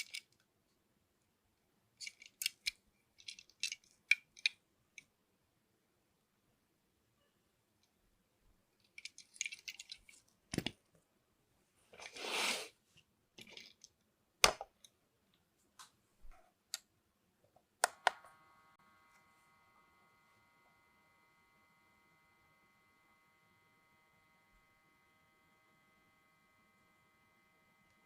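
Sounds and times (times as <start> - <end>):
small parts clicking: 0.0 - 0.5, 2.0 - 5.1, 8.8 - 10.7
faint held tone: 18.2 - 28.0.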